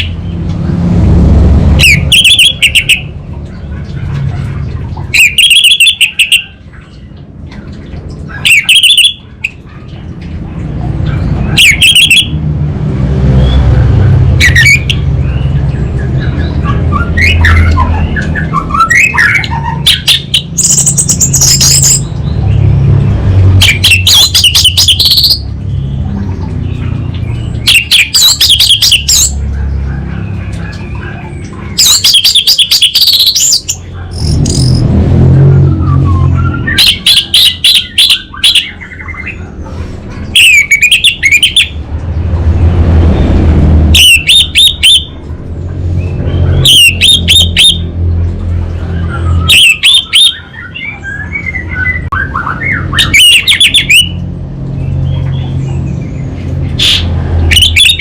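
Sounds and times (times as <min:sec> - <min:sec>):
steady low hum: 0:00.0 - 0:05.2.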